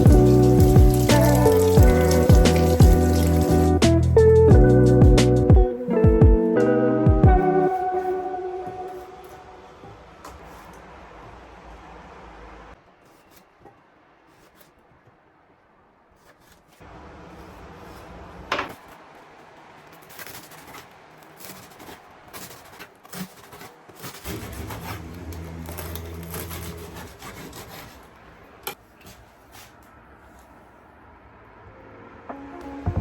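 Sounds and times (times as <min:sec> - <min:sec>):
rubbing and scraping handling: 0:16.1 - 0:30.7.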